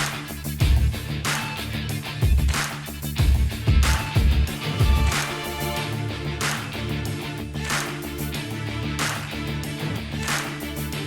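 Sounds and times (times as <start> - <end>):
background music chords and bass: 0.0 - 11.0.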